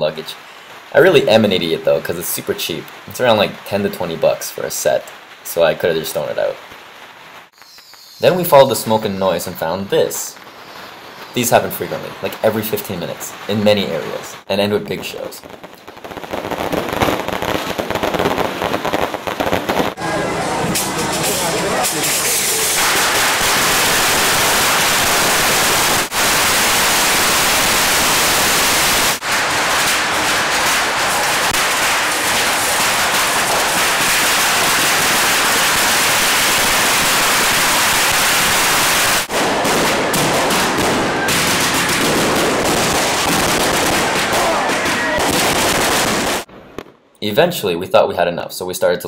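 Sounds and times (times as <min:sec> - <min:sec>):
bottle rockets crackling and banging: 0:20.6 - 0:47.0.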